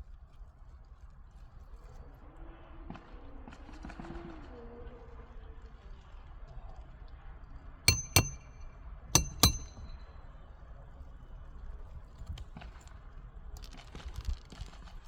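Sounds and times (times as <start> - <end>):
hammer striking metal: 7.9 - 10.0.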